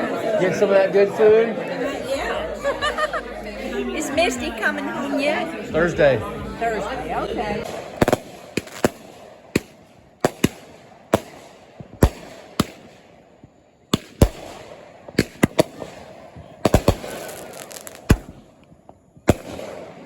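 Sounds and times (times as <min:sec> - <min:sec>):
fireworks bangs and cracks: 0:07.6 - 0:20.0.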